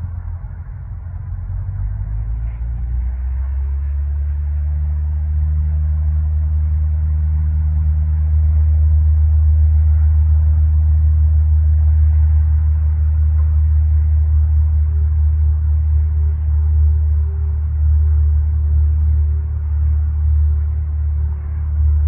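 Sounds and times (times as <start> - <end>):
aircraft piston engines droning: 0.0 - 4.6.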